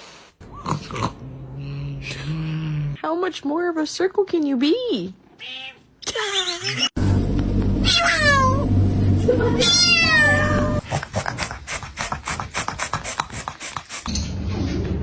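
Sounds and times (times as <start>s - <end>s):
cat meowing: 5.4s - 5.8s, 7.8s - 8.6s, 9.6s - 10.8s
low steady hum: 7.0s - 10.8s.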